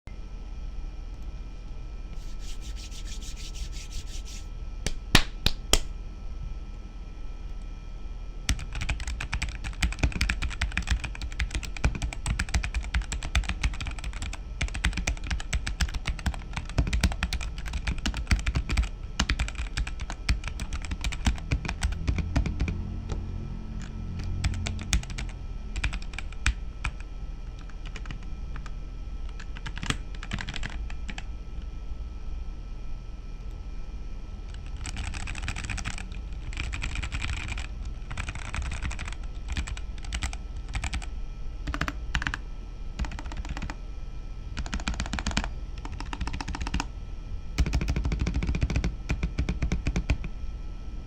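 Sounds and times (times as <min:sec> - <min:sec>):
mechanical keyboard typing: 0:08.5 - 0:22.8, 0:23.8 - 0:27.0, 0:27.6 - 0:28.7, 0:29.3 - 0:31.2, 0:34.5 - 0:41.1, 0:41.7 - 0:42.4, 0:43.0 - 0:43.8, 0:44.6 - 0:46.9, 0:47.6 - 0:50.3.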